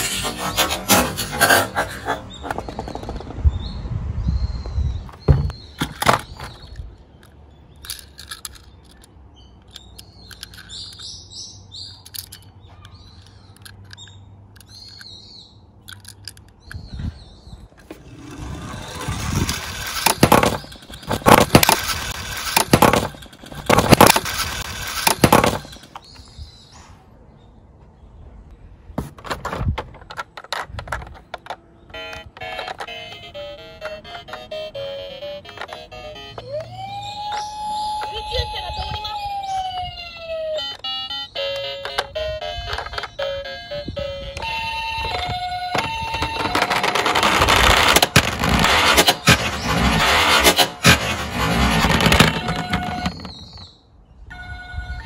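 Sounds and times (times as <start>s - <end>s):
toy cars rolling and clattering: 5.8s - 11.2s, 11.8s - 15.1s, 15.8s - 16.8s, 17.8s - 26.2s, 29.1s - 34.6s, 35.2s - 36.6s, 41.4s - 43.6s, 44.4s - 53.7s
sharp clicks: 15.8s - 16.9s, 19.3s - 26.2s
loud rattling: 17.9s - 26.1s, 45.8s - 53.7s.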